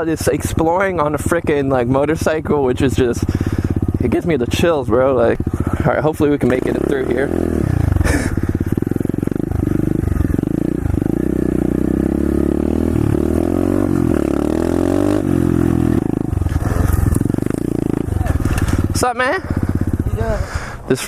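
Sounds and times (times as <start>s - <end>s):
small motorbike engine revving: 3.2s - 4.2s, 5.2s - 20.8s.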